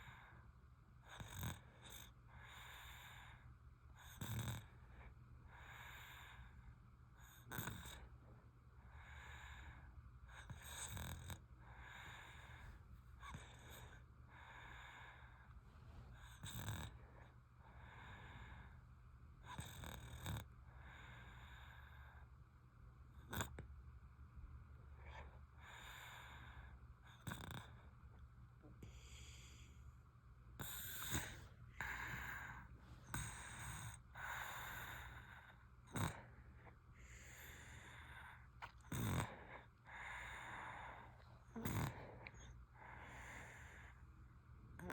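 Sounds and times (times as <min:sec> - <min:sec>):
baby breathing with soft snores: 0:08.8 - 0:18.8, 0:28.8 - 0:29.9, 0:30.6 - 0:44.0
baby snoring: 0:30.6 - 0:35.3, 0:38.6 - 0:39.6, 0:40.2 - 0:42.5.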